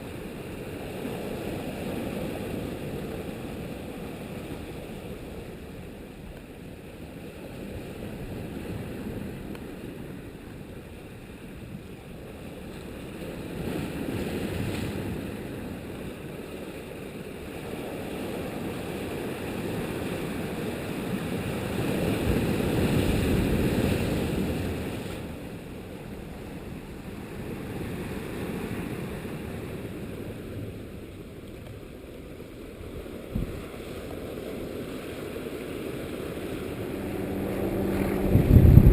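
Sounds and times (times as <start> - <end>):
wind buffeting microphone: 32.6 - 38.9.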